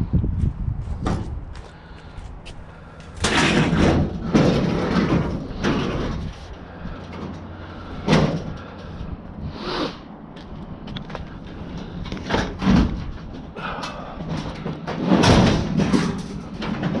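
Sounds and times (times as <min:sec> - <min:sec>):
loud scraping and sliding: 0:03.2 - 0:10.1, 0:14.2 - 0:17.0.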